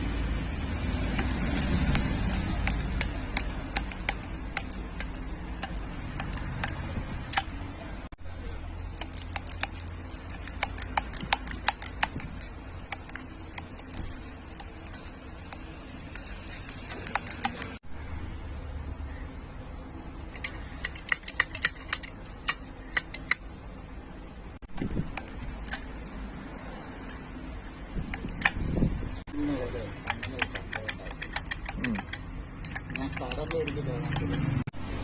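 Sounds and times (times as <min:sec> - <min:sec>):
hand riveter clicking: 0:01.0 - 0:07.6, 0:09.0 - 0:17.8, 0:20.3 - 0:23.4, 0:28.1 - 0:28.6, 0:29.9 - 0:34.5.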